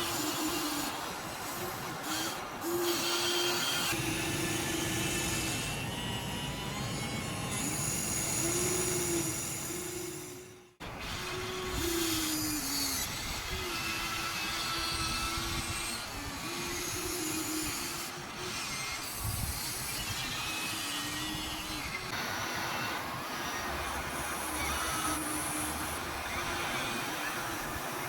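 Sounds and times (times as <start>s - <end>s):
electric gear motors whining: 0.0s - 28.0s.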